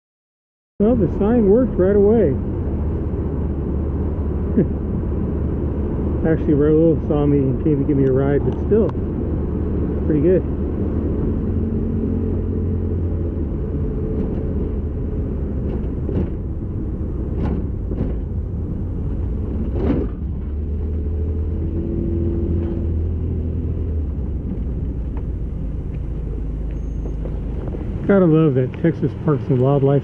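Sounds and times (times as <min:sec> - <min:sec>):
car engine and road rumble: 0:00.8 - 0:30.0
knocks and rattles: 0:15.4 - 0:21.0.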